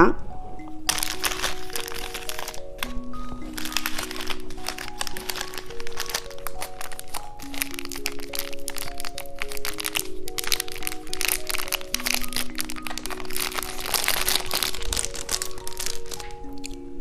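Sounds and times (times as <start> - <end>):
slow background music: 0.0 - 17.0
crackling and crunching clicks: 0.6 - 17.0.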